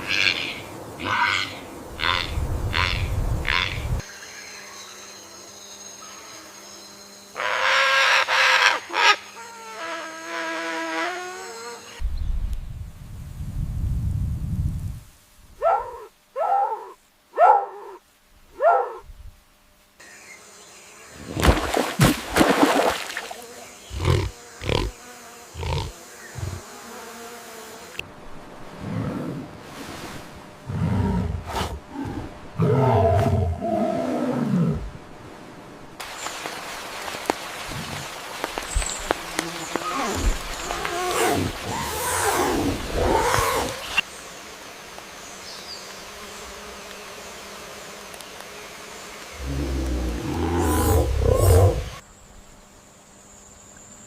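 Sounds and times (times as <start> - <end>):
steady hiss: 11.5 - 16.4, 34.5 - 54.0
animal bark-like calls: 15.6 - 18.0, 18.6 - 19.1.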